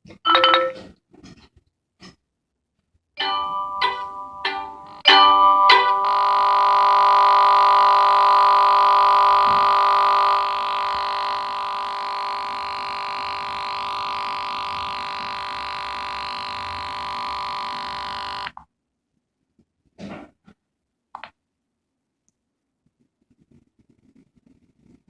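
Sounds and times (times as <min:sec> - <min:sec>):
phone speaker electronic tone: 0:03.3 - 0:18.6.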